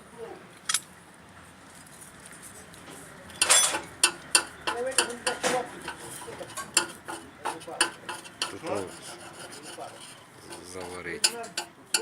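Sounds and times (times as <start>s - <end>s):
metal clinks and knocks: 3.4s - 8.6s.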